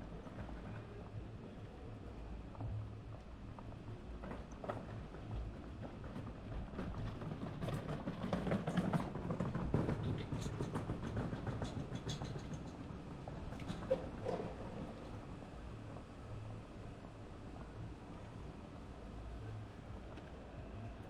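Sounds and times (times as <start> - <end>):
scattered clicks and clatter: 4.2 - 14.6.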